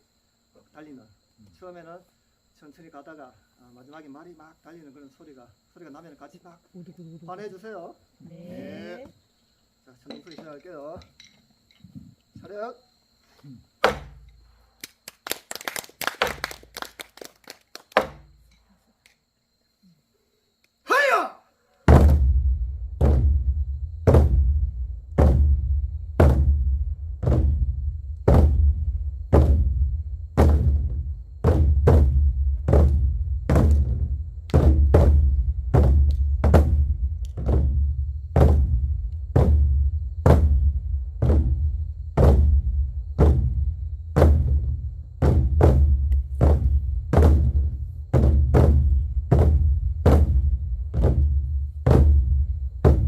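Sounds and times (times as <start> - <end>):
barrel drums booming: 21.9 - 53.0.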